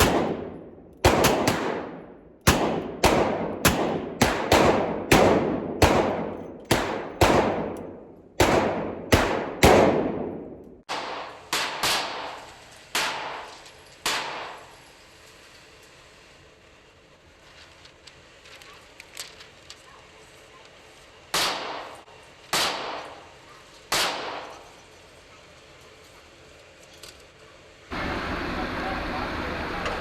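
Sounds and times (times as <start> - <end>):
handgun gunshots echoing: 0.0 - 12.4, 21.4 - 23.2, 23.9 - 24.6.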